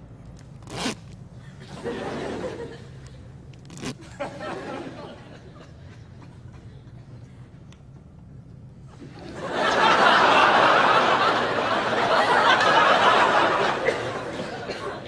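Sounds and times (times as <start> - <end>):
crowd laughing: 1.6 - 3.2, 4.0 - 7.2, 9.0 - 15.0.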